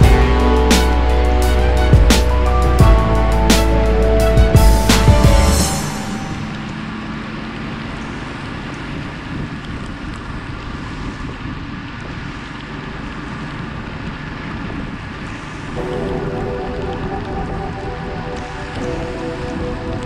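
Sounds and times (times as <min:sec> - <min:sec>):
music: 0:00.0 - 0:06.8, 0:15.8 - 0:20.0
motorbike wind and road noise: 0:00.0 - 0:20.0
wind on microphone: 0:08.6 - 0:20.0.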